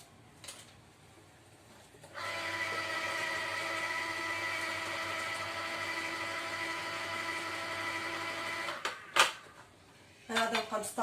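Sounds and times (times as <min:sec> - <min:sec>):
electric juicer motor whining: 0:02.1 - 0:09.0.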